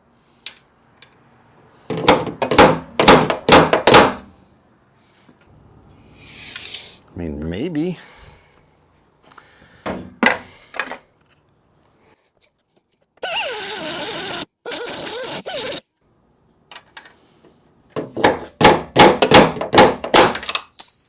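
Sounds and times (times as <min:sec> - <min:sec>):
hammer striking metal punch: 0:02.0 - 0:04.2
power tool bursts: 0:13.2 - 0:15.8.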